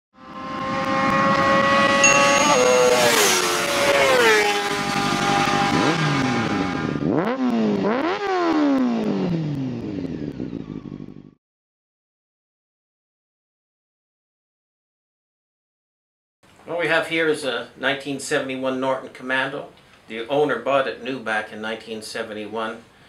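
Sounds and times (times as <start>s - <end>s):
vehicle engine revving: 0.2s - 11.4s.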